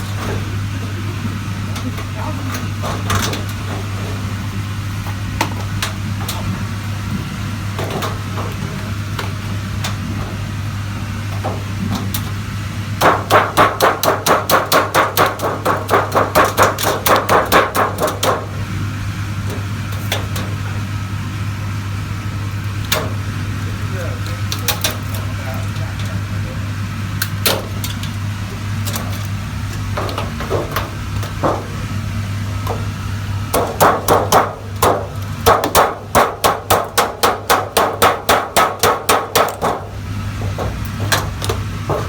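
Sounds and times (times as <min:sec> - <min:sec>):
steady low hum: 0:00.0 - 0:42.0
rapid hammering: 0:13.0 - 0:18.6, 0:33.5 - 0:42.0.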